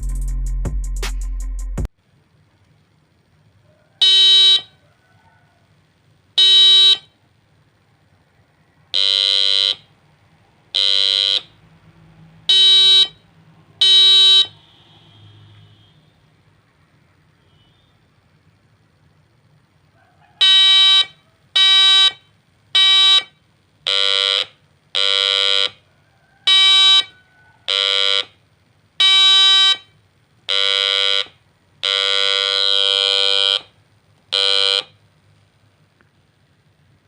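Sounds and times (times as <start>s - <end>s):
buzzy electronic doorbell tone: 9.0s - 9.9s, 10.8s - 11.5s, 27.7s - 28.3s, 30.5s - 33.7s, 34.3s - 34.9s.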